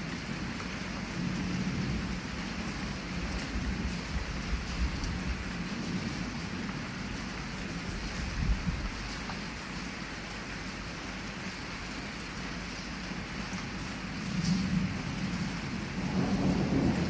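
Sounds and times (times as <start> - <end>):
heavy rain falling: 0.0 - 17.0
thunder rumbling: 14.1 - 17.0.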